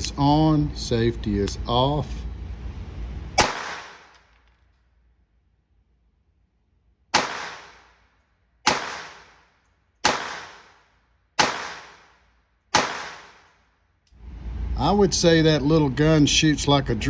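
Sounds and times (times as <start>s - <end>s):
pistol shots with echo: 3.4s - 4.2s, 7.1s - 8.0s, 8.6s - 13.6s.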